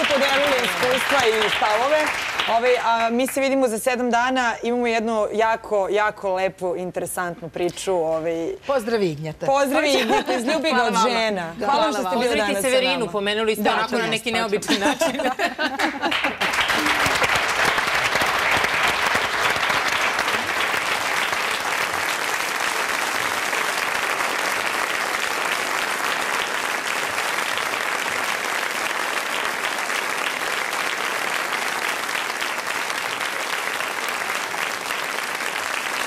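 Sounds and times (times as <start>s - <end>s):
audience applauding: 0.0s - 3.2s, 15.1s - 36.0s.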